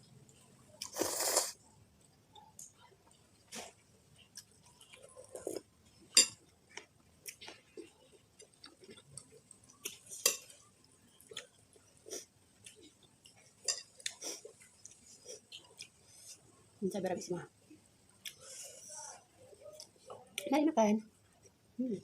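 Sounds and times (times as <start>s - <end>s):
cutlery clinking against bowl: 6.1s - 6.4s, 10.2s - 10.5s, 13.6s - 14.0s.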